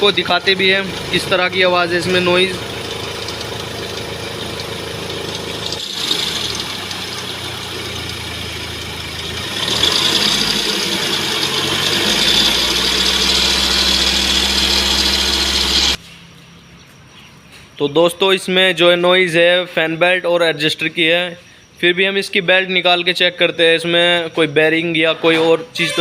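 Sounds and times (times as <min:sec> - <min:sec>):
car engine running: 0:00.0 - 0:16.0
fan belt noise: 0:00.0 - 0:16.0.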